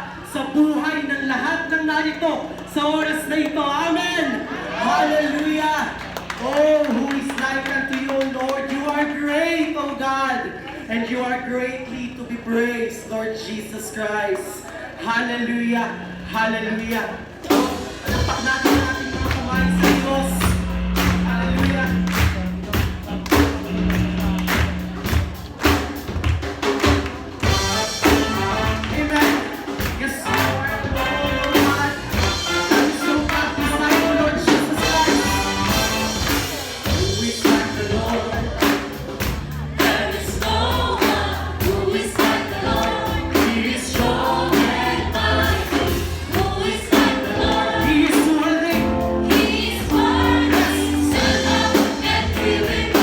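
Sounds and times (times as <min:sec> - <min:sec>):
gospel band music: 0:00.0 - 0:10.2, 0:11.8 - 0:53.0
bass: 0:00.0 - 0:53.0
steady drum beat: 0:17.4 - 0:53.0
group of voices singing: 0:17.5 - 0:25.0, 0:27.4 - 0:53.0.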